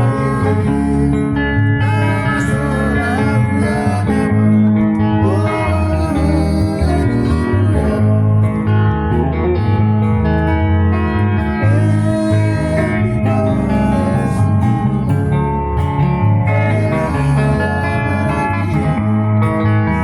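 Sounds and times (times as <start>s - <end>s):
person singing: 0.0s - 8.7s, 11.6s - 14.9s, 16.4s - 20.0s
bass line: 0.0s - 20.0s
guitars playing: 0.0s - 20.0s.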